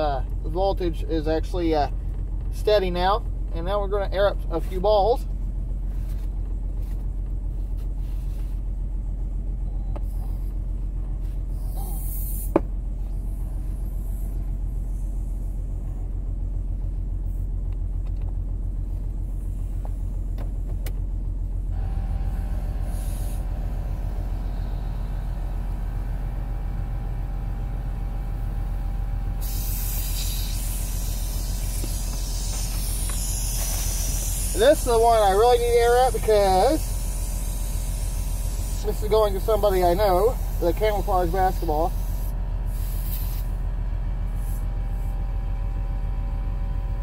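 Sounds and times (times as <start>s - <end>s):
air compressor humming: 0.0s - 45.8s
car engine idling: 0.0s - 47.0s
air hissing: 11.3s - 16.0s, 21.7s - 26.3s, 29.3s - 43.6s, 44.3s - 45.2s.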